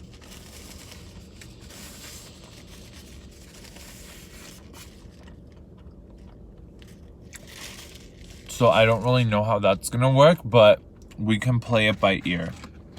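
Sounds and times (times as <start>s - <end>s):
paper wrapper rustling: 0.0s - 5.3s, 6.8s - 9.1s
low steady hum: 0.0s - 12.9s.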